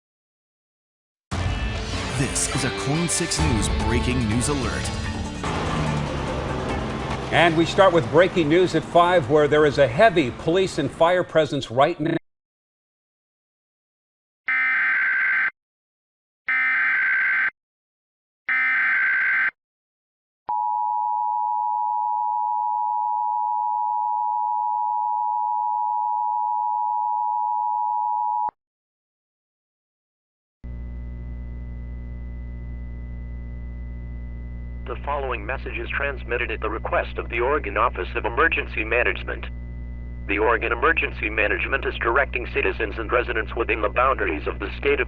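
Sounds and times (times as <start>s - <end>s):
steady low hum: 30.7s - 45.0s.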